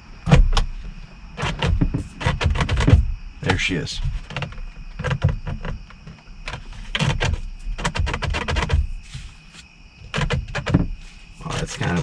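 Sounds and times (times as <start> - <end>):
plastic clips clicking and knocking: 1.4 - 8.8, 10.1 - 10.9.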